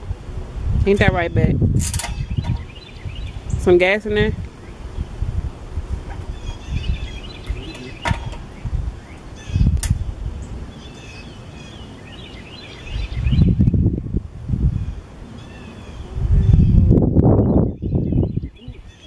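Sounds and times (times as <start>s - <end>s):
wind buffeting microphone: 0.0s - 19.0s
birds chirping: 0.9s - 19.0s
sharp clicks: 9.7s - 10.0s.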